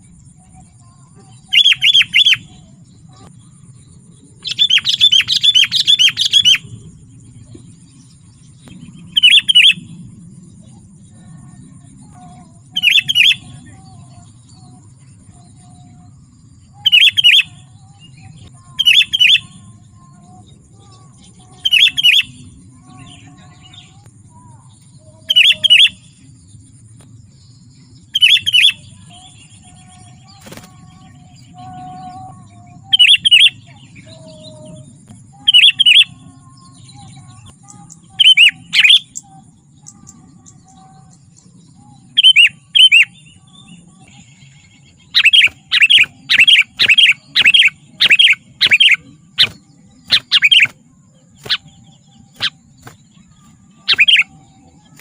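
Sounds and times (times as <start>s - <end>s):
low steady hum: 0.0s - 55.0s
bulbul chirping: 45.2s - 54.3s.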